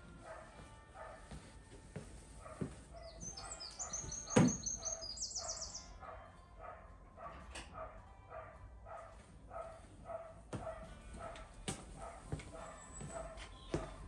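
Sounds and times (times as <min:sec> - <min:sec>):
dog barking: 0:00.1 - 0:01.5, 0:02.3 - 0:14.0
bird chirping: 0:02.9 - 0:06.1.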